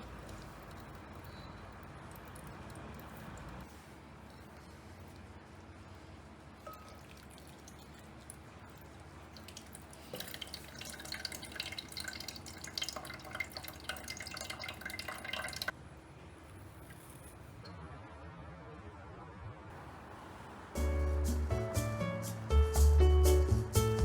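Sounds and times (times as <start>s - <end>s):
water dripping: 0.0s - 3.7s, 6.5s - 15.8s
water running and splashing: 6.5s - 15.7s.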